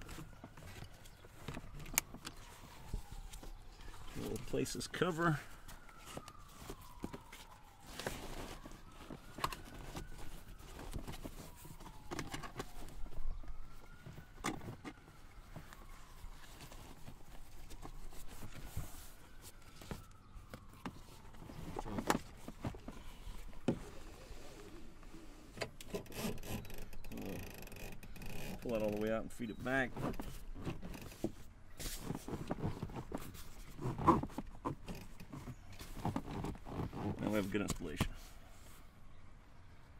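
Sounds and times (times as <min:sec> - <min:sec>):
car seat handling clicks and rustling: 0:00.0 - 0:02.5, 0:08.0 - 0:15.0, 0:16.6 - 0:24.0, 0:25.5 - 0:28.7, 0:29.7 - 0:38.1
distant siren wailing: 0:00.0 - 0:39.0.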